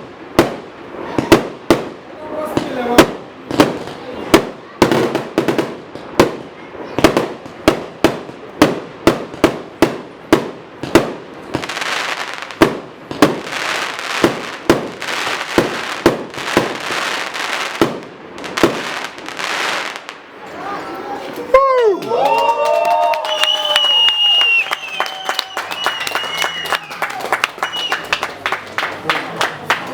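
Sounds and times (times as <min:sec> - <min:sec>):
fireworks bangs: 0:00.0 - 0:20.5
fireworks crackling: 0:00.0 - 0:20.6, 0:23.0 - 0:29.9.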